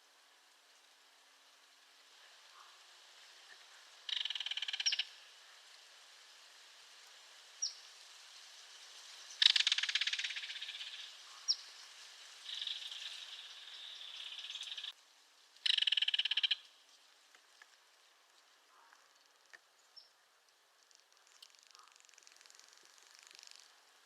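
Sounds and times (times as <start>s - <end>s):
kingfisher rattle call: 4.1s - 5.1s, 9.4s - 11.1s, 15.6s - 16.7s.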